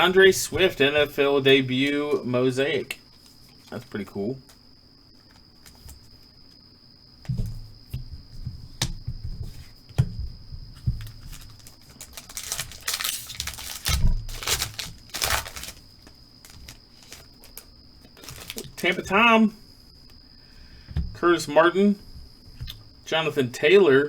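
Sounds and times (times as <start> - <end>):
dull knocks of cards handled: 7.2 - 11.5
wrapper crinkling and ripping: 11.0 - 18.9.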